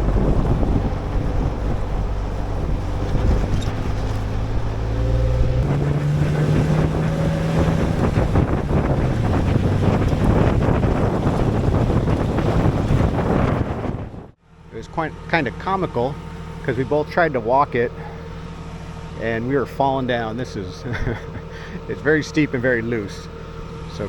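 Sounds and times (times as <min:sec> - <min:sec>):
wind buffeting microphone: 0:00.0 - 0:14.4
car engine under load: 0:00.0 - 0:24.0.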